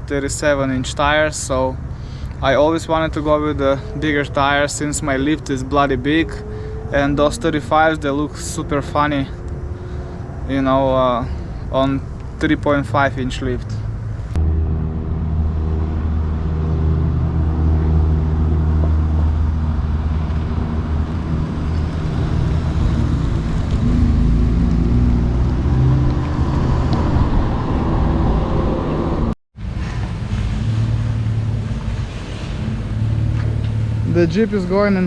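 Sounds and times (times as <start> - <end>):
engine running low hum: 0.0 - 35.0.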